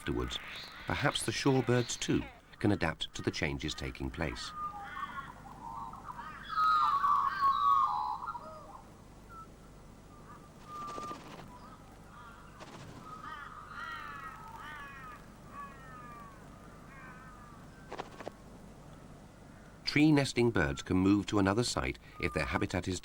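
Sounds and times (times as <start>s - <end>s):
harsh raspy bird calls: 10.2s - 19.8s
short scratchy noises: 10.6s - 11.5s, 12.6s - 13.5s, 17.9s - 18.4s.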